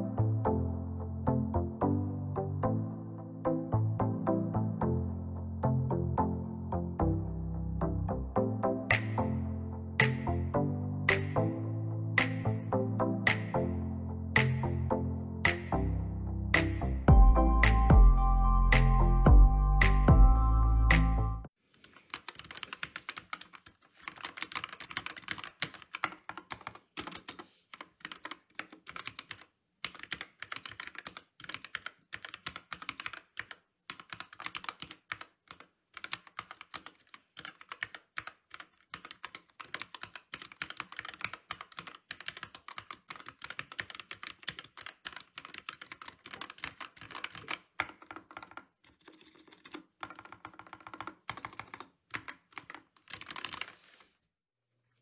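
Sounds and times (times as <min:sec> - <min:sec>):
mechanical keyboard typing: 0:21.9 - 0:53.8.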